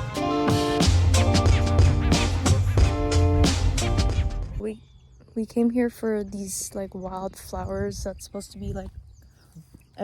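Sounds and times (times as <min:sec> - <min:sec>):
background music with drums and bass: 0:00.0 - 0:04.6.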